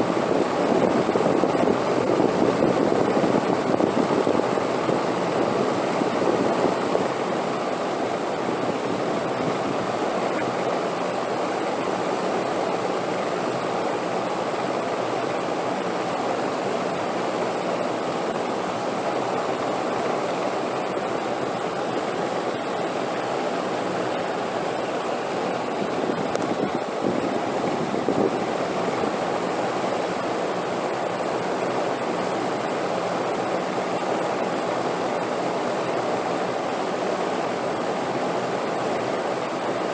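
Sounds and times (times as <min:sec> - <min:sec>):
wind blowing: 0:20.8 - 0:31.0.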